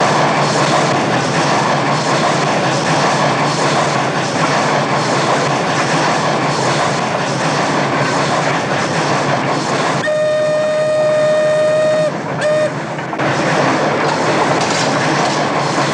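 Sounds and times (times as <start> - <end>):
steam locomotive chuffing: 0.0 - 15.9
steam whistle: 10.0 - 12.8.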